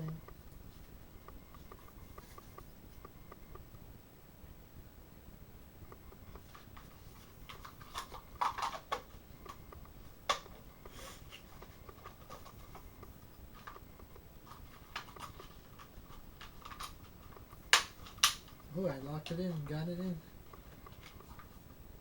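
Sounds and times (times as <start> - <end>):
plastic toy parts clicking: 7.5 - 9.6, 14.9 - 18.6.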